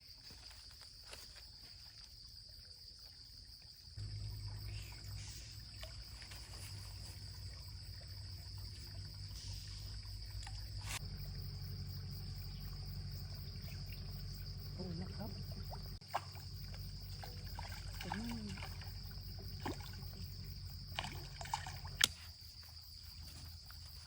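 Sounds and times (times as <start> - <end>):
insects trilling: 0.0 - 24.0
low steady rumble: 4.0 - 18.0.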